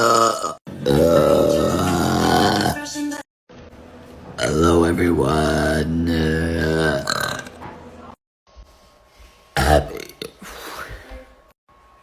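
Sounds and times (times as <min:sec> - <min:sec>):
woman belching: 0:00.0 - 0:02.9, 0:05.4 - 0:07.6.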